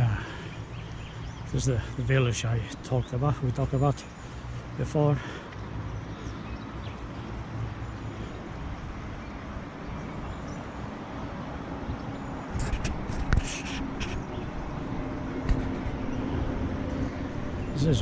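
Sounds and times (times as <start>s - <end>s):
knocks and clicks on microphone: 15.4s - 16.0s.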